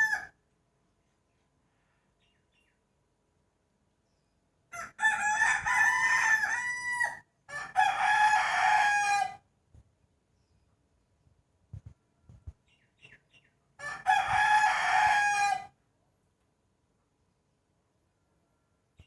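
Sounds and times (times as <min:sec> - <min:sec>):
rooster crowing: 0:00.0 - 0:00.4, 0:04.7 - 0:09.4, 0:13.8 - 0:15.8.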